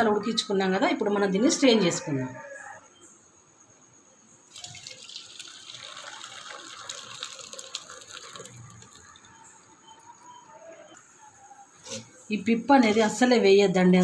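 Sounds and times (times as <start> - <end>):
liquid pouring through strainer: 4.5 - 9.4.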